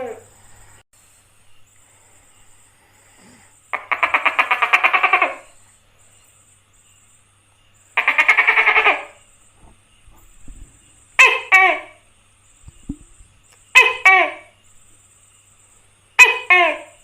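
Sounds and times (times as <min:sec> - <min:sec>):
gecko calling: 0:00.0 - 0:00.5, 0:02.6 - 0:05.8, 0:07.8 - 0:14.8, 0:16.2 - 0:17.0.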